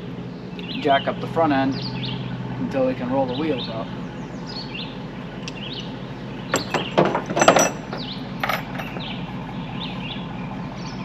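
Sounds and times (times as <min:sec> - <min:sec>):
small birds chirping: 0:00.0 - 0:11.0
steady low hum: 0:00.0 - 0:11.0
jack clicking and clanking: 0:06.5 - 0:09.2.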